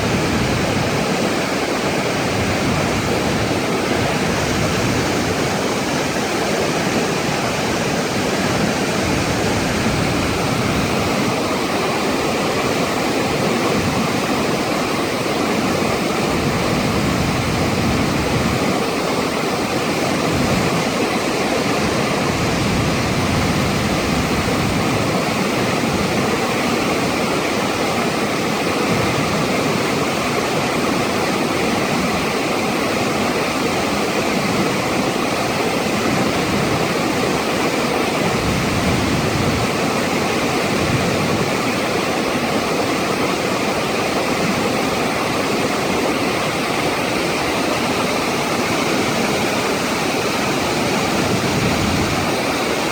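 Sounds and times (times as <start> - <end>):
flood water rushing: 0.0 - 52.9.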